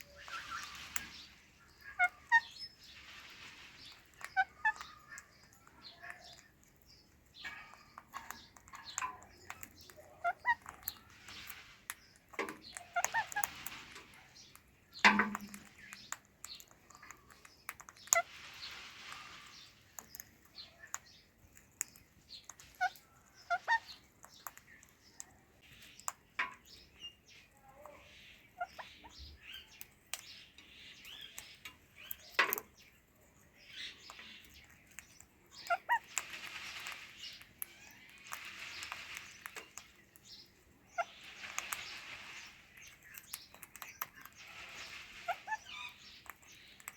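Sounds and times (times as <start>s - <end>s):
soft hissing noise: 0.0s - 4.4s, 18.2s - 20.6s, 35.6s - 46.9s
parakeets chirping and squeaking: 0.0s - 46.9s.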